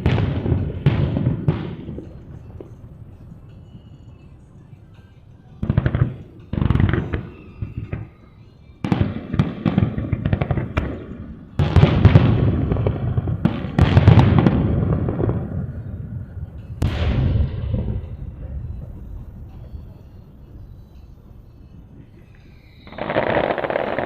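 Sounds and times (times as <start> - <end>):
fireworks booming: 0.0 - 4.0, 5.6 - 24.0
sharp crackles: 20.8 - 24.0.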